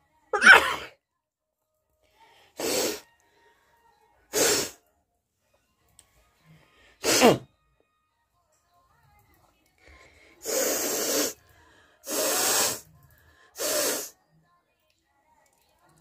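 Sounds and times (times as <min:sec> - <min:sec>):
person sneezing: 0:00.4 - 0:00.9, 0:02.6 - 0:03.0, 0:04.3 - 0:04.8, 0:07.0 - 0:07.4.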